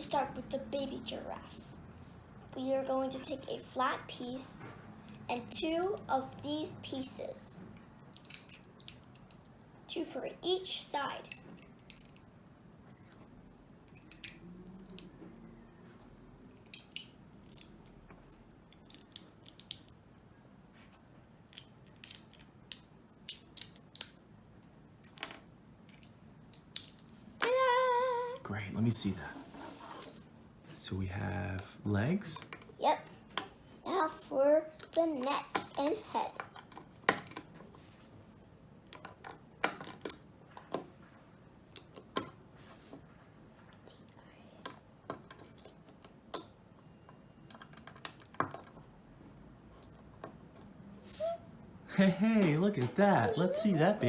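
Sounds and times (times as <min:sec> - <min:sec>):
plastic bricks clicking: 0:18.7 - 0:20.0, 0:21.4 - 0:24.2, 0:25.2 - 0:27.0.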